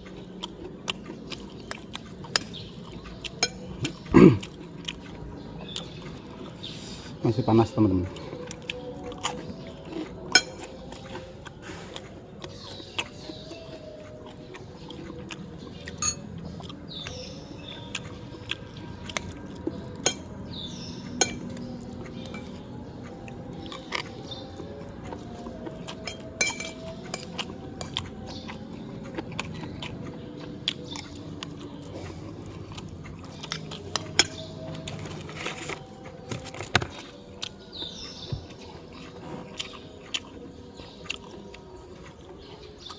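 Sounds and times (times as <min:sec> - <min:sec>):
person chewing: 0:00.0 - 0:07.2, 0:08.0 - 0:42.9
utensil clinking on plate: 0:26.1 - 0:27.3.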